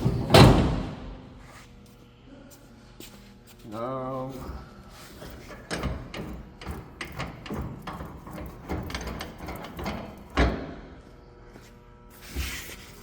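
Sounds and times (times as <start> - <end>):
baler knocks and clanks: 0.0 - 1.2, 5.2 - 10.8.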